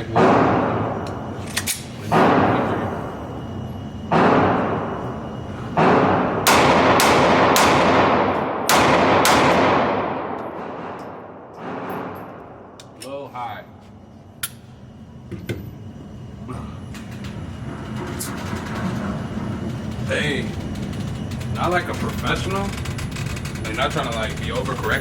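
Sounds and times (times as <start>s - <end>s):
handgun shots echoing: 5.8s - 12.2s.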